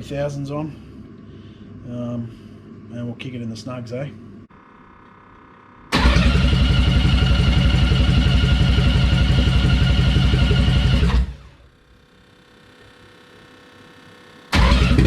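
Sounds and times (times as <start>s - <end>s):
faint steady whine: 0.0s - 6.0s
race car engine running: 6.0s - 11.7s, 14.6s - 15.0s.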